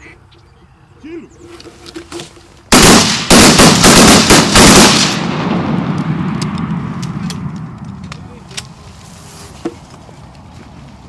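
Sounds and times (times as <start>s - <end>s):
gunshot echo: 2.7s - 7.8s
shotgun blasts: 2.7s - 7.8s.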